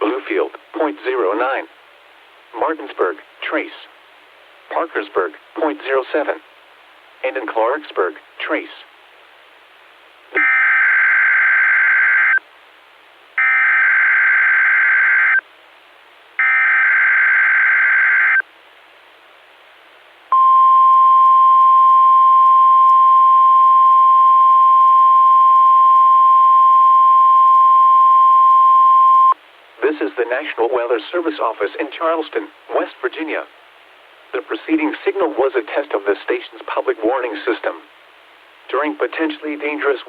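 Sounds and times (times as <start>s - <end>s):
steady warning alarm tone: 10.4s - 12.4s, 13.4s - 15.4s, 16.4s - 18.4s.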